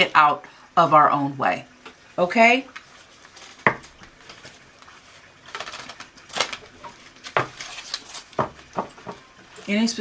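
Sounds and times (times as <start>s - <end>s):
handling rustle: 2.8s - 8.5s.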